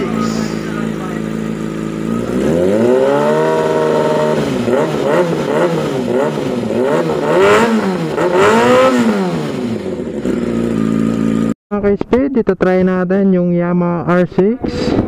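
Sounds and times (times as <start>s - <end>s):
motorcycle engine revving: 0.0s - 11.6s.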